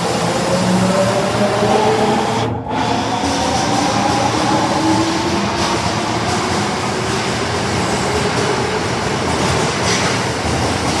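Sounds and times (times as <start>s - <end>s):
subway train rumbling on rails: 0.0s - 11.0s.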